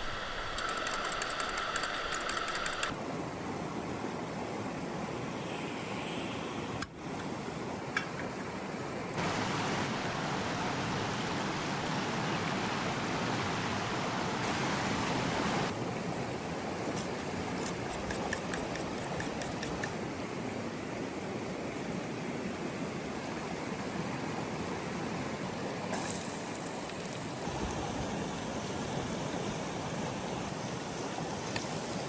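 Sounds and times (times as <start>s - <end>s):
river water rushing: 9.2s - 17.5s.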